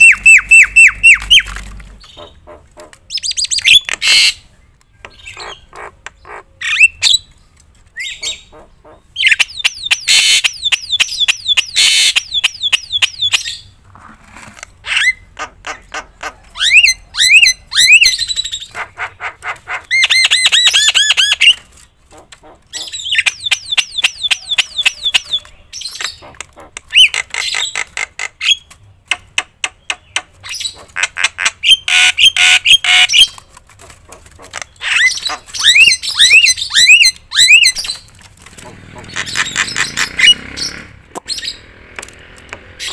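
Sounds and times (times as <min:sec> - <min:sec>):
myna chirping and whistling: 0:00.0 - 0:02.5, 0:05.0 - 0:07.3, 0:08.0 - 0:13.7, 0:14.9 - 0:21.6, 0:22.7 - 0:27.8, 0:34.6 - 0:38.1, 0:39.0 - 0:41.7.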